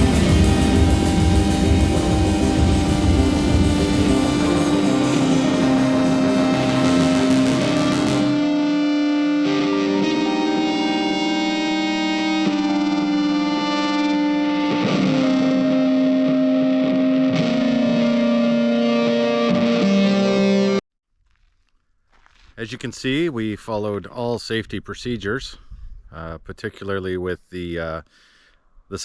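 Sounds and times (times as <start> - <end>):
distorted electric guitar: 0.0 - 20.8.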